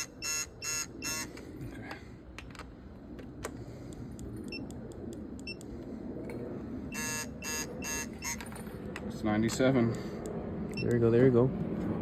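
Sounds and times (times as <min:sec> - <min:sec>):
short beeps: 0:06.9 - 0:08.4.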